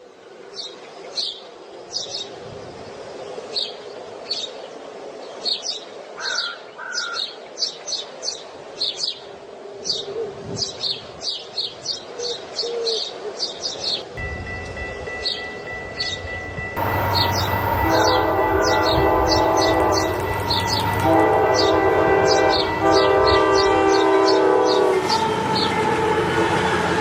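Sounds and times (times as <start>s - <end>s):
birds chirping: 13.8s - 26.8s.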